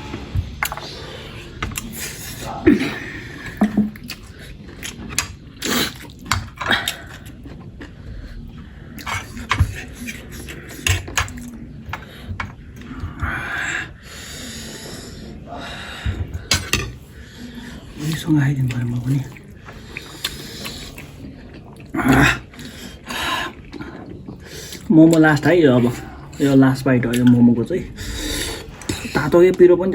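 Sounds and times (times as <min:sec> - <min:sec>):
eating noises: 0:00.1 - 0:15.4.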